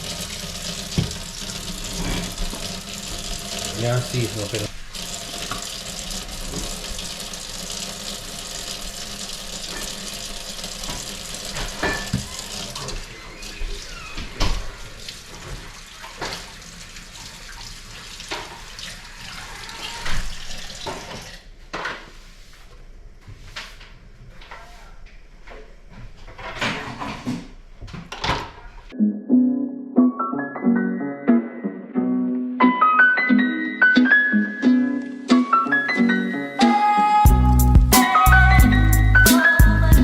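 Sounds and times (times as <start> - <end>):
tap running into sink: 0.0 - 7.2, 9.5 - 13.0
dishes and utensils clattering: 10.9 - 13.0.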